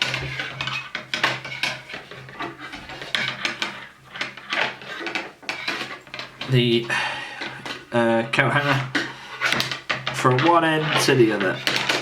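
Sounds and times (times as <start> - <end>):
wire clinking and scraping: 0.0 - 12.0.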